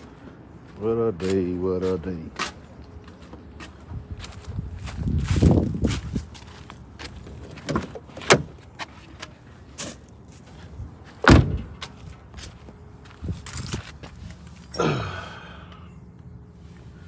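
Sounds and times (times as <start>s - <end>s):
loud thump: 11.3s - 11.7s.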